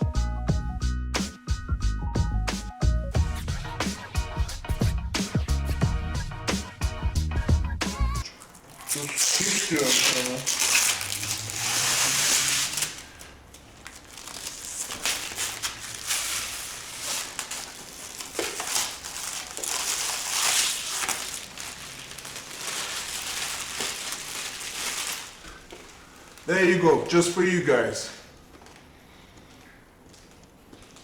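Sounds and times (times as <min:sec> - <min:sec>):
packing material crinkling: 0:08.2 - 0:28.9.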